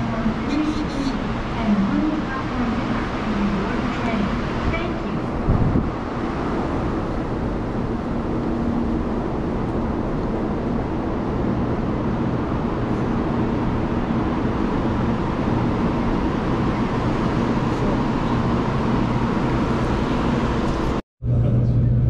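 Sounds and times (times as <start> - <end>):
high speed train rushing: 0.0 - 22.0.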